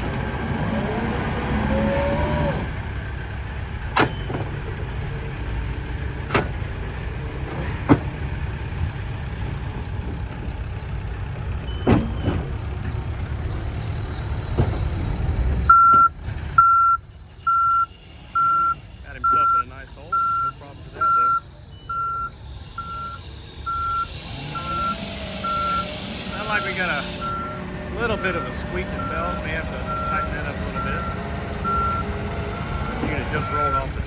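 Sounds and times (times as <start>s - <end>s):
diesel engine running: 0.0s - 34.0s
reversing alarm beeping: 1.5s - 13.7s, 15.7s - 34.0s
metal clunks: 3.9s - 4.8s, 6.2s - 8.5s, 9.5s - 13.0s, 14.4s - 16.2s.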